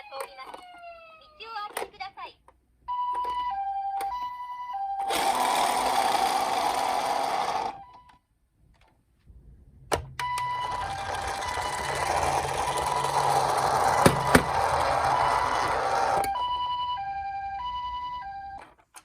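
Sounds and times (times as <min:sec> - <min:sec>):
toy siren two-tone: 0:00.0 - 0:01.4, 0:02.9 - 0:08.2, 0:10.2 - 0:18.7
toy car motor whirring: 0:05.0 - 0:07.9, 0:10.6 - 0:16.4.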